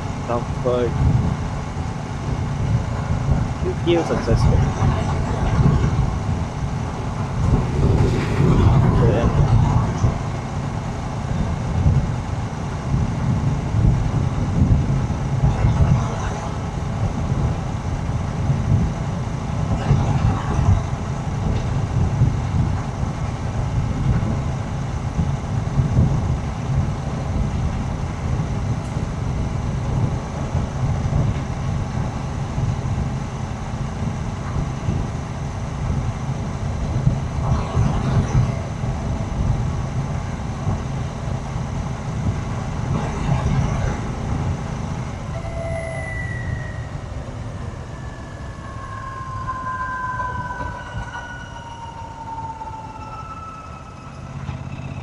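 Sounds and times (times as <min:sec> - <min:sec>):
high gliding tones: 0:03.7 - 0:11.7, 0:42.7 - 0:55.0.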